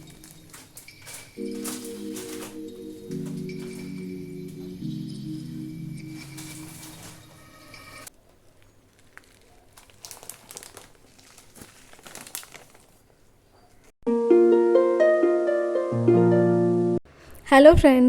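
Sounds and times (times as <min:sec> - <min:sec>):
crinkling and handling noises: 0:00.0 - 0:04.9, 0:06.0 - 0:13.9
plucked-string music: 0:01.4 - 0:07.2, 0:14.1 - 0:17.0.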